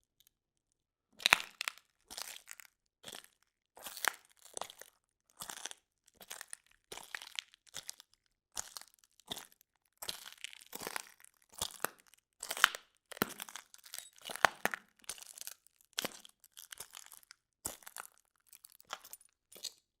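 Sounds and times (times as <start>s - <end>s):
footsteps crunching on broken glass: 13.2s - 15.4s.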